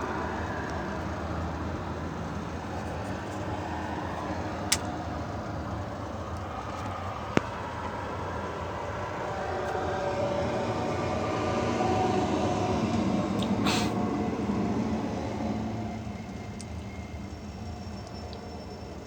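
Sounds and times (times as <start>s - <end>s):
short hiss: 13.6s - 14.0s.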